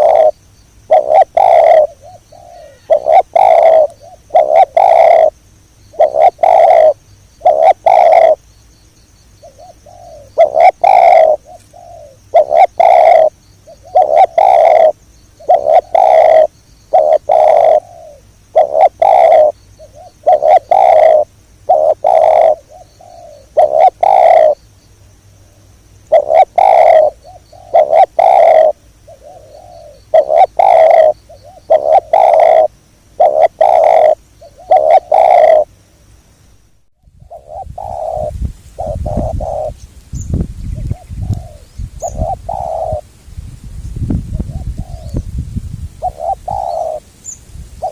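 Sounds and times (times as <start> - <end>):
dove cooing: 0.0 - 8.4, 9.4 - 24.6, 26.1 - 35.7, 37.2 - 39.8, 40.7 - 43.0, 44.4 - 45.2, 46.0 - 47.0.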